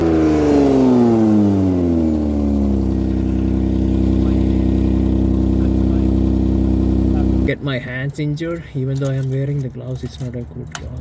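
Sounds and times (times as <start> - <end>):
car engine settling to idle: 0.0 - 8.2.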